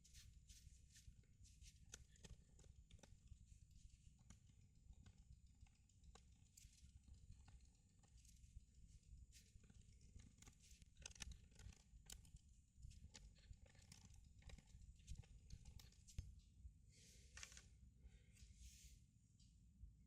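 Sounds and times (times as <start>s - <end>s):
hands handling laptop parts: 17.0s - 17.8s.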